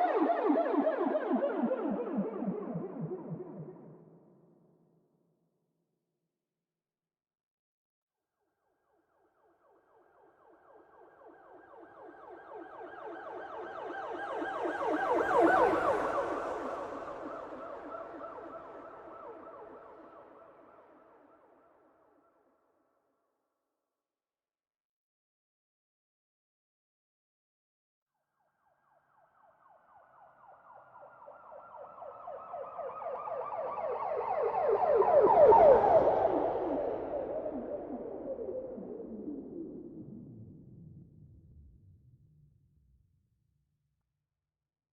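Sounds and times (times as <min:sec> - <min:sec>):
police siren yelping: 0:30.5 - 0:38.7.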